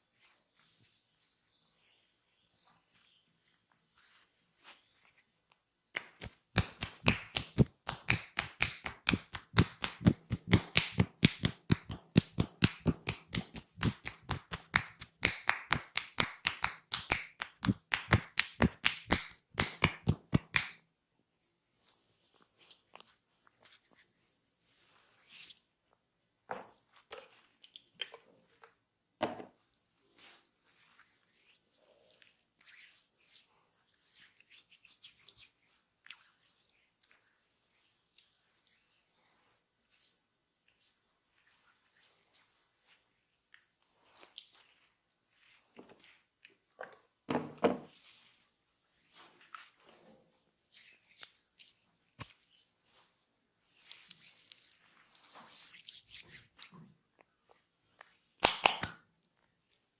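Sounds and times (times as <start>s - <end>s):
hands rubbing and squishing: 5.9s - 20.8s, 30.1s - 39.3s, 50.6s - 59.9s
squishy rubbing on skin: 30.2s - 39.0s, 50.6s - 57.6s.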